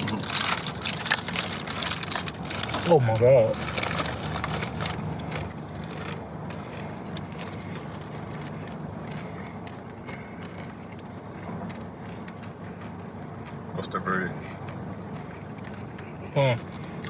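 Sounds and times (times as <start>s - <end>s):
bag rustling clicks: 0.0s - 5.6s
crisp crunching of food: 0.0s - 17.0s
steady low hum: 0.0s - 17.0s.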